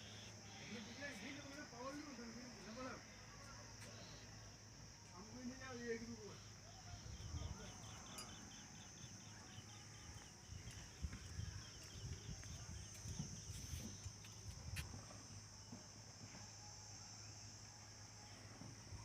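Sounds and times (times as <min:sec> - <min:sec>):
insects trilling: 0:00.0 - 0:19.0
short quick insect chirps: 0:12.8 - 0:15.0.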